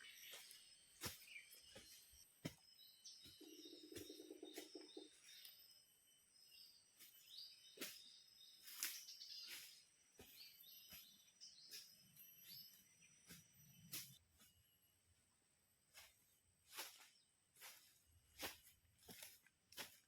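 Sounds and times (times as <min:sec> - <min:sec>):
small birds chirping: 0:00.0 - 0:14.9.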